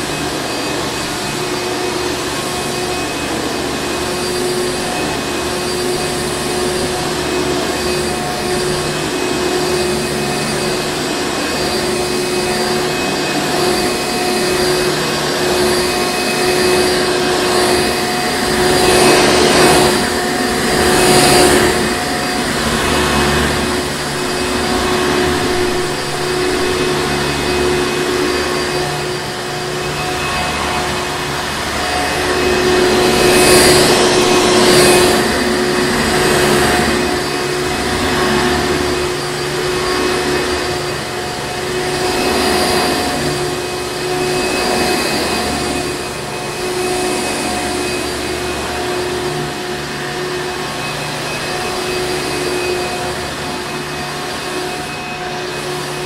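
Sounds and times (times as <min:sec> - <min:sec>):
vacuum cleaner motor hum: 0:00.0 - 0:56.0
rush of air: 0:18.7 - 0:40.9.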